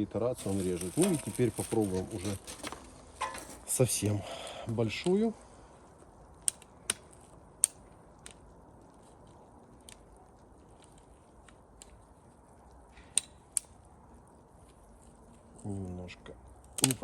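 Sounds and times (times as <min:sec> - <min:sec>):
ratchet pruner clicking and snapping: 0:16.7 - 0:17.0.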